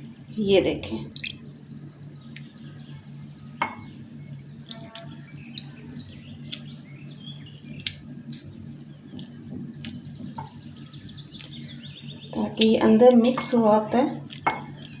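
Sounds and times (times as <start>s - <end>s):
low steady hum: 0.0s - 15.0s
birds chirping: 1.1s - 15.0s
glassware and utensils clinking: 3.6s - 5.1s.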